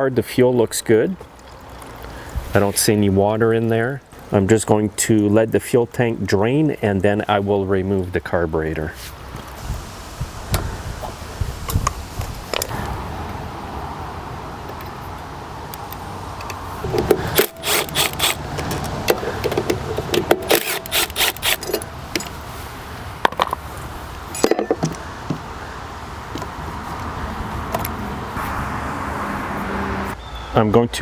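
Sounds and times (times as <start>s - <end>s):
hand tools and metal parts clanking: 10.4s - 12.8s, 15.7s - 25.5s.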